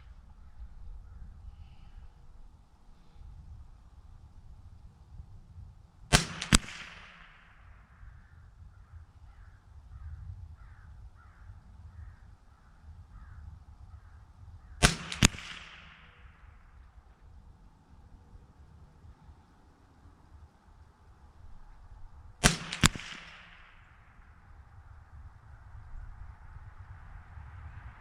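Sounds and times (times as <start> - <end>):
rifle shots: 6.1 - 7.7, 14.8 - 16.8, 22.4 - 24.3.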